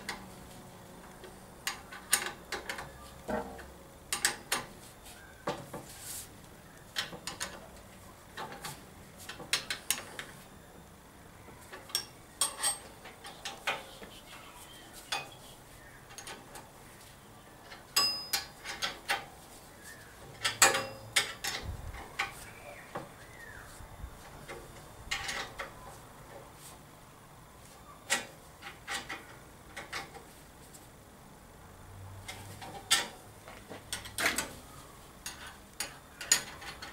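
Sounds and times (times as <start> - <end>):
metal parts and tools clinking: 11.7 - 13.9, 17.6 - 19.3, 20.4 - 22.4, 24.4 - 25.7, 33.9 - 34.6, 35.2 - 36.9.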